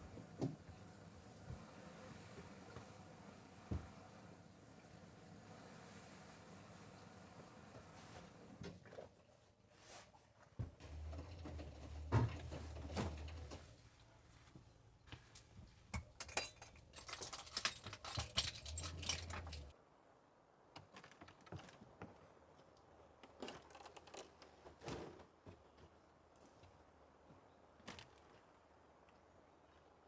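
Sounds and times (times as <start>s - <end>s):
handling knocks and clicks: 10.8s - 13.7s, 15.1s - 19.7s
small metal objects jingling: 16.2s - 19.7s.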